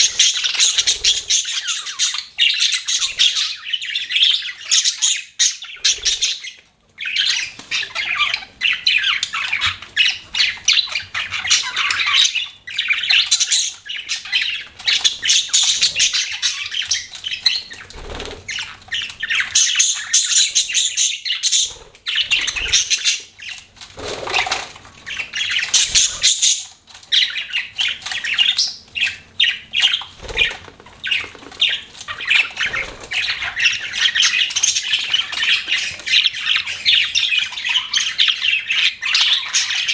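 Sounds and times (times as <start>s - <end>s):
budgerigars chirping and chattering: 0.0s - 39.9s.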